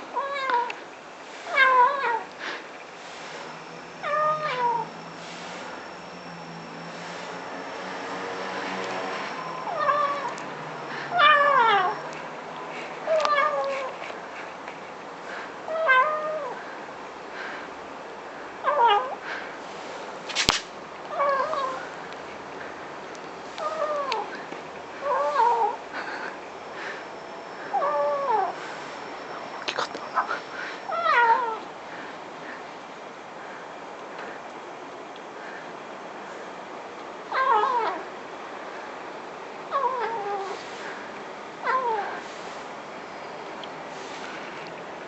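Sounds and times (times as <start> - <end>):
background hiss: 0.0 - 45.0
kitten meowing: 11.1 - 12.1
sharp click: 20.3 - 20.7.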